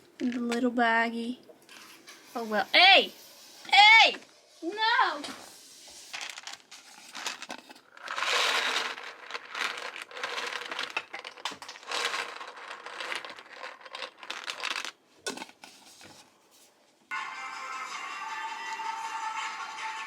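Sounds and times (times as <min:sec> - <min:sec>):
plastic bag crinkling: 0:06.2 - 0:14.9.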